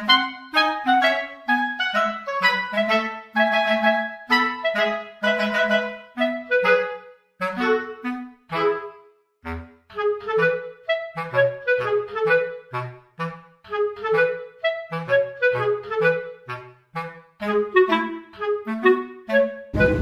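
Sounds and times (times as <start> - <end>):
lively woodwind tune: 0.0 - 20.0
bass line: 19.8 - 20.0.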